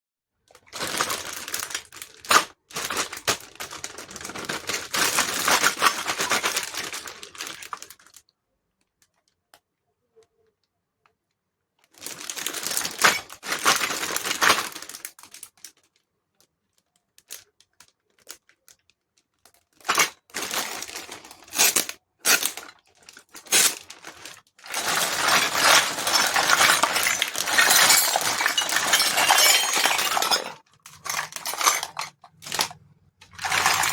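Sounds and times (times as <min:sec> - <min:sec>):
packaging crinkling and tearing: 0:00.5 - 0:08.2, 0:11.9 - 0:16.1, 0:16.8 - 0:30.3, 0:30.9 - 0:33.9
plastic pieces clicking and tapping: 0:11.8 - 0:33.9.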